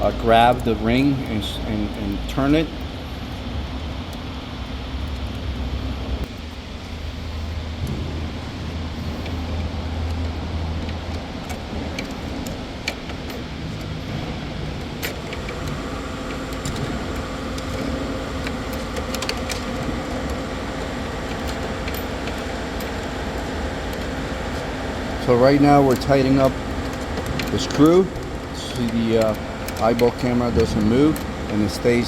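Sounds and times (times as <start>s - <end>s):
low hum: 0.0s - 32.0s
workshop background hum: 0.0s - 32.0s.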